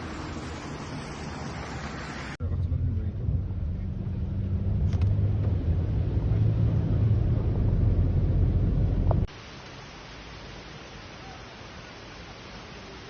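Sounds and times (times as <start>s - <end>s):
vehicle engine running: 0.0s - 9.3s
quiet hiss: 6.3s - 13.0s.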